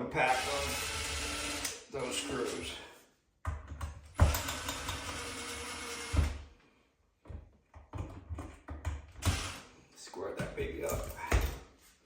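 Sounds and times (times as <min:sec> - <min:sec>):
cordless screwdriver running: 0:00.4 - 0:01.8.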